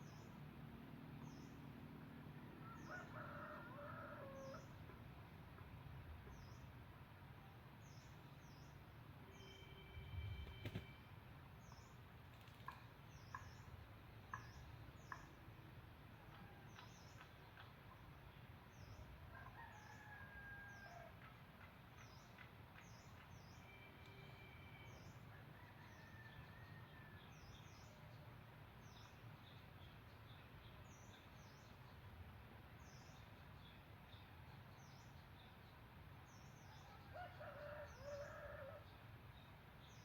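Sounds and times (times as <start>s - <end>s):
distant rooster crowing: 2.5s - 4.8s, 19.3s - 21.3s, 23.6s - 27.6s, 36.8s - 38.9s.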